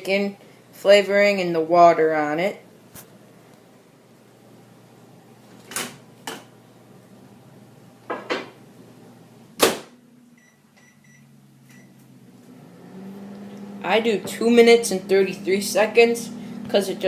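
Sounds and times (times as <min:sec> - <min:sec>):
keypad beeps: 0:10.4 - 0:11.9.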